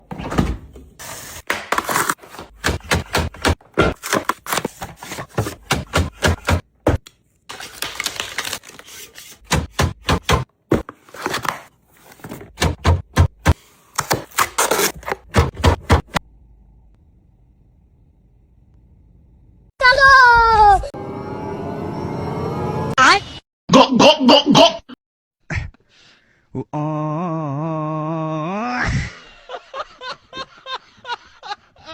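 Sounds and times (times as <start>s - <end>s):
packaging rustling: 7.4s - 9.1s, 10.9s - 12.5s.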